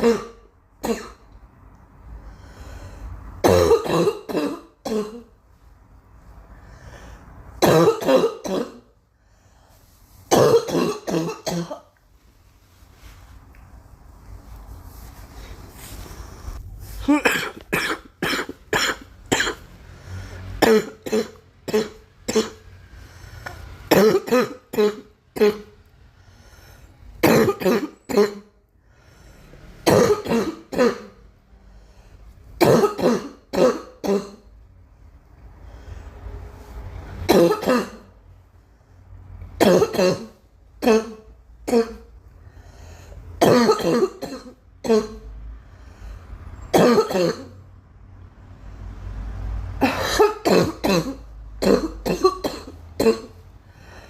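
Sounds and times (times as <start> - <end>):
girl coughing: 0.0 - 1.2, 3.4 - 5.3, 7.6 - 8.9, 10.3 - 11.9, 17.0 - 19.6, 20.6 - 22.7, 23.9 - 25.7, 27.2 - 28.5, 29.8 - 31.2, 32.6 - 34.4, 37.3 - 38.1, 39.6 - 42.1, 43.4 - 45.3, 46.7 - 47.6, 49.8 - 53.4.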